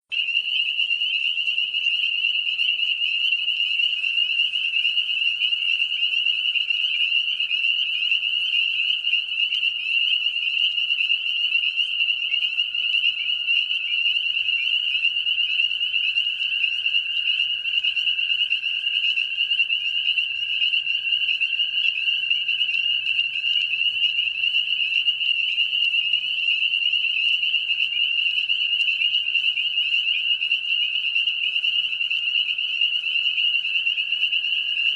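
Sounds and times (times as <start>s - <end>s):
chorus of frogs peeping: 0.1s - 34.9s.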